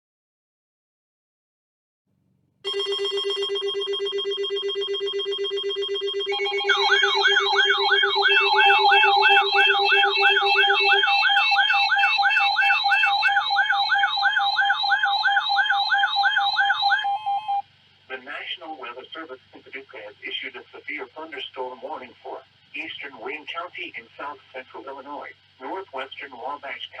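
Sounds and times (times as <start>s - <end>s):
low pulsing buzzing alarm tone: 2.6s - 17.6s
siren-like warble: 2.7s - 17.6s
high electronic beeps: 4.2s - 17.6s.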